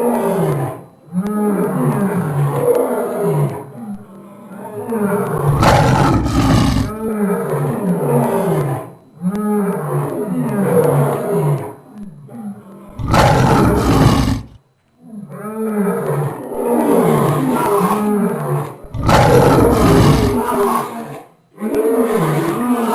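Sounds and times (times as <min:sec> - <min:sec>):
lion roaring: 0:05.2 - 0:07.6, 0:12.9 - 0:14.6, 0:16.1 - 0:21.0.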